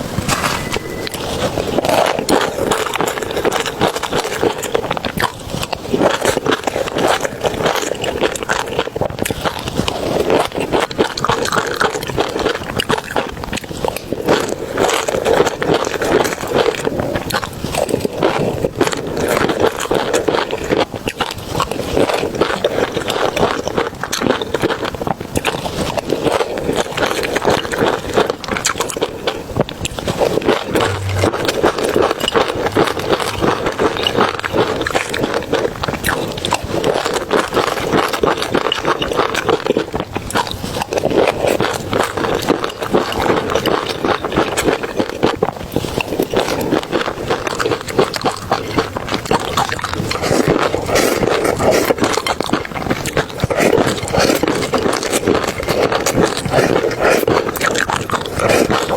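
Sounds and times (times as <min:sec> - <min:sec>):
mouth clicks: 0:30.8 - 0:31.7
chewing: 0:32.3 - 0:58.9.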